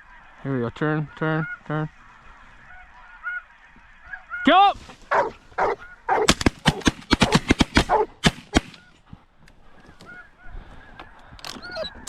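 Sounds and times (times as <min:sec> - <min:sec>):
geese honking: 0:00.0 - 0:09.0, 0:09.7 - 0:12.0
shotgun blasts: 0:06.1 - 0:08.9.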